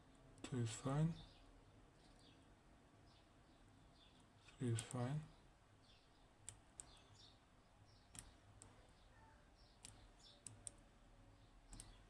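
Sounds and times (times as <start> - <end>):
lock pick clicking on pins: 11.7 - 12.0.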